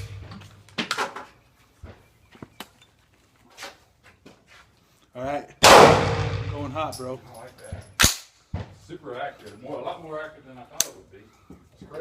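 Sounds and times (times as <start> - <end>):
gunshot reverberating: 5.6 - 6.9.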